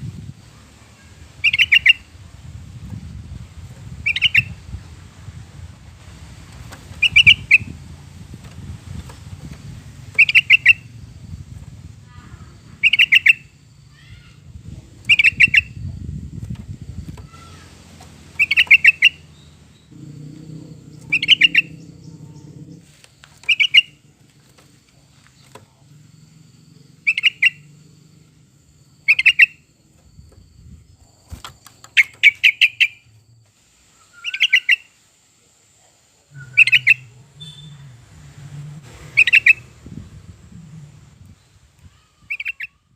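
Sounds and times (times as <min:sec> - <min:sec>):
bird singing bubbly phrases: 0:01.1 - 0:02.1, 0:04.0 - 0:04.6, 0:07.0 - 0:07.7, 0:10.2 - 0:11.0, 0:12.4 - 0:13.6, 0:14.3 - 0:15.8, 0:18.3 - 0:24.2, 0:27.0 - 0:27.8, 0:29.0 - 0:29.6, 0:36.3 - 0:38.0, 0:39.1 - 0:39.7.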